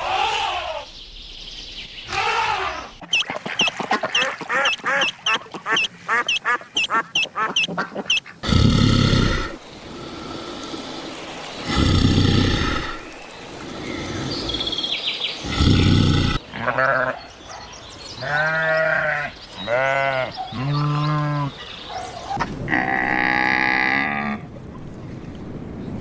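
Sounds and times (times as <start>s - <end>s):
high chirping animal calls: 2.0s - 9.6s
deep roaring animal calls: 8.4s - 11.0s, 11.6s - 14.8s, 15.4s - 16.4s.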